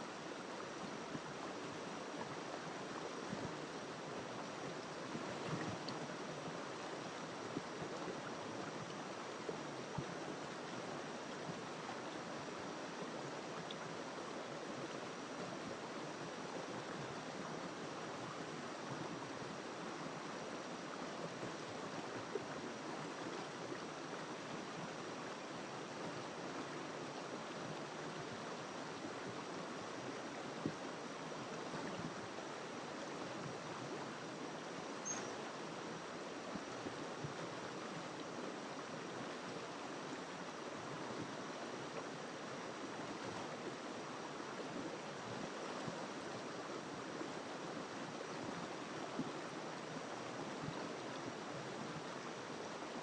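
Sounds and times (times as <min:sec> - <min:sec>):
river water flowing: 0:00.0 - 0:53.0.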